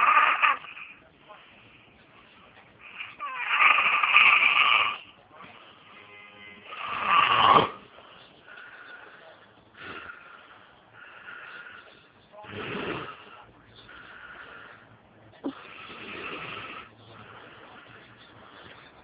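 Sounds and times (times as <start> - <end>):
man snoring: 3.0 - 5.0, 6.7 - 7.8, 12.4 - 13.4, 15.5 - 18.0.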